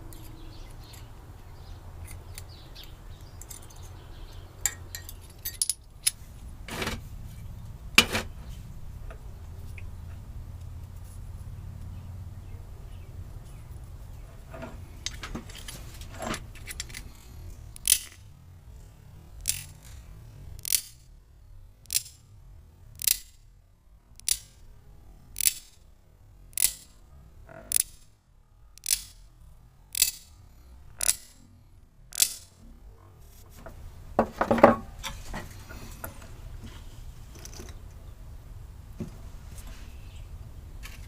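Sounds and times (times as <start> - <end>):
steady low hum: 0.0 - 41.0
metallic clinks and taps: 4.6 - 6.2, 32.1 - 32.6.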